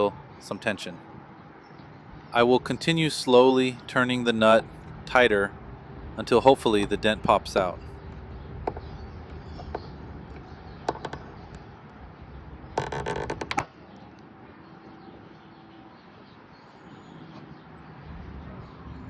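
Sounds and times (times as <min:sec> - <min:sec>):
bracket clicking as nut turns: 0:08.7 - 0:11.6, 0:12.8 - 0:13.7.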